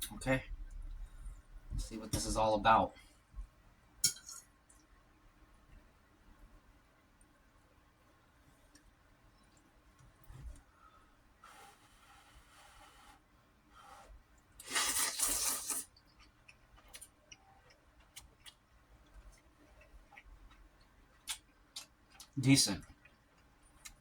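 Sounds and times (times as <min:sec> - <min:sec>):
soft chewing: 0:13.8 - 0:24.0
noodle slurp: 0:14.6 - 0:15.9.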